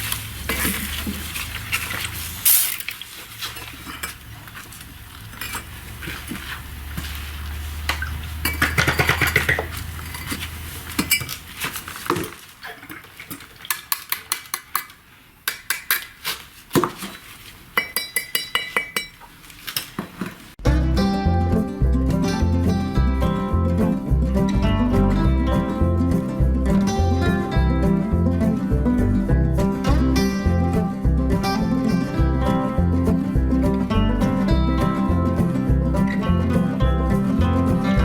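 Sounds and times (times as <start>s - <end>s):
metal tools scraping on brick: 8.0s - 11.5s
low hum: 20.6s - 38.0s.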